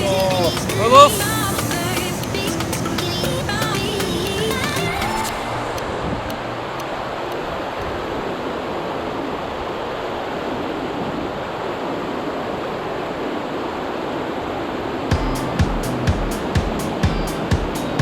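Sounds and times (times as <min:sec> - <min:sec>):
mountain stream rushing: 0:00.0 - 0:15.1
short low thumps: 0:15.1 - 0:18.0.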